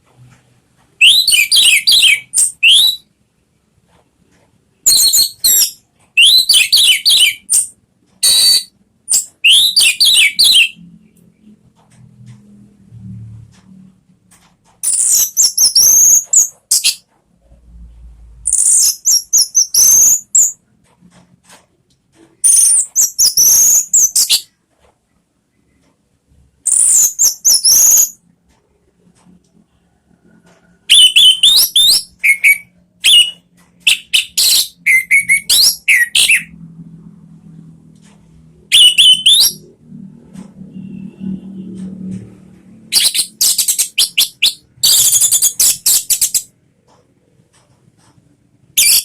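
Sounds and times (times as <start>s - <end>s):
slurred whistled bird notes: 1.0s - 3.0s, 4.9s - 10.8s, 30.9s - 36.5s.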